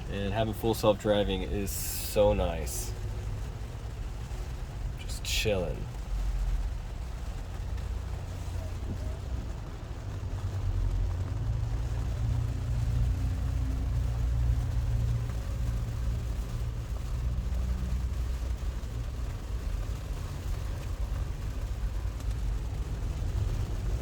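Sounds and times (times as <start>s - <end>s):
low road rumble in car: 0.0s - 24.0s.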